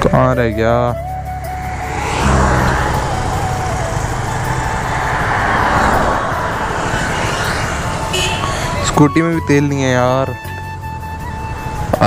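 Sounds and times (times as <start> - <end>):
road and wind noise: 0.0 - 12.0
scooter engine running: 1.6 - 9.2.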